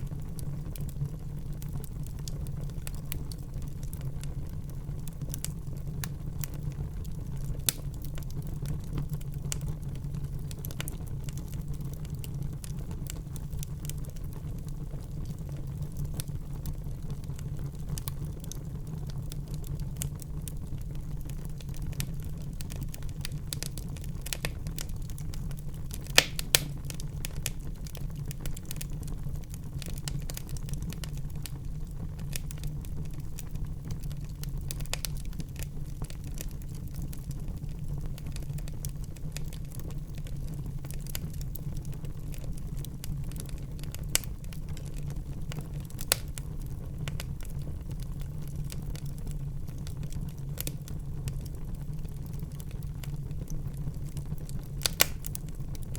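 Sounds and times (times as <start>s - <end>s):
fire crackling in fireplace: 0.0s - 55.9s
sharp pops of fire: 21.7s - 29.1s, 43.0s - 44.9s, 45.5s - 47.6s, 54.5s - 55.9s.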